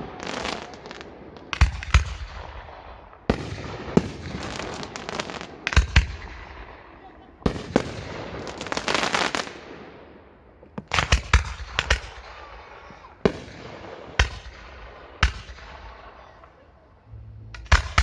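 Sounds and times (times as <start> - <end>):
fireworks crackling: 0.0 - 9.9, 10.6 - 18.0
fireworks bangs: 0.0 - 18.0.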